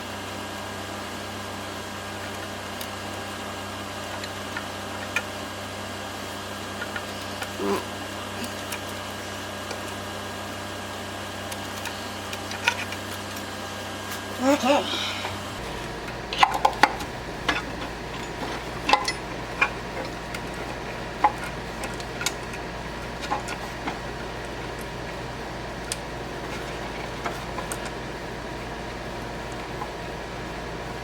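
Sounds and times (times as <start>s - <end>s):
steady background hum: 6.9s - 9.3s, 11.8s - 31.0s.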